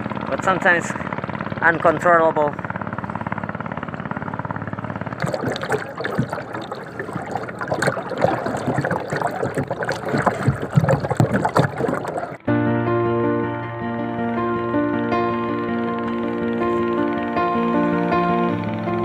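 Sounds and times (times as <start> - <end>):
water splashing against hull: 4.7 - 12.4.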